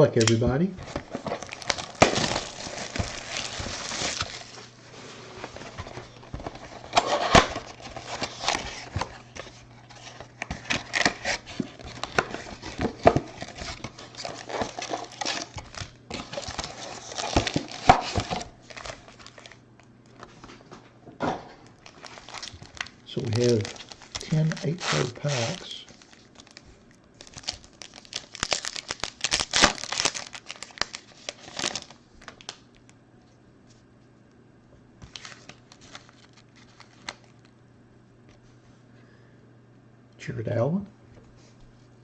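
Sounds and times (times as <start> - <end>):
faint low hum: 0.0 - 42.0
plastic wrapping crinkling and tearing: 0.8 - 19.6, 21.6 - 32.9, 35.0 - 37.5
cardboard clicks and rustles: 5.3 - 19.6.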